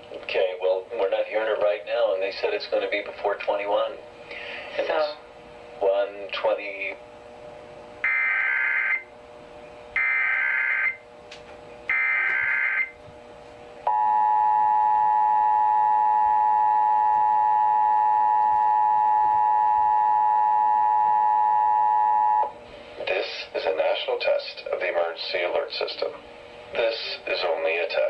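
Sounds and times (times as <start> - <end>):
warbling data tone bursts: 8.0 - 9.0, 10.0 - 11.0, 11.9 - 12.9
steady two-tone attention signal: 13.9 - 22.5.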